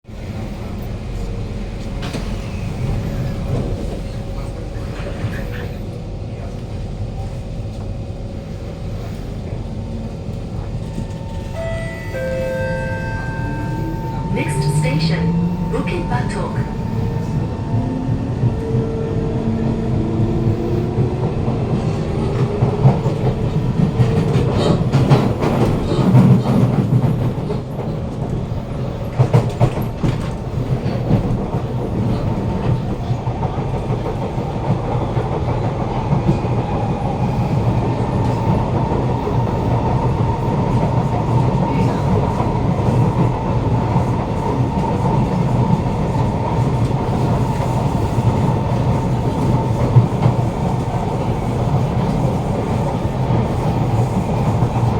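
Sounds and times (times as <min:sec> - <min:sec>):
train traction motors whining: 0:10.0 - 0:25.0.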